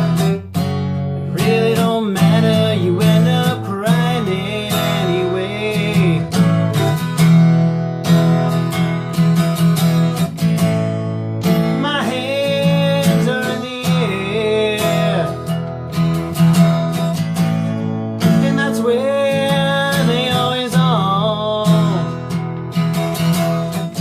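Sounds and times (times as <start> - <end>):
acoustic guitar strumming: 0.0 - 24.0.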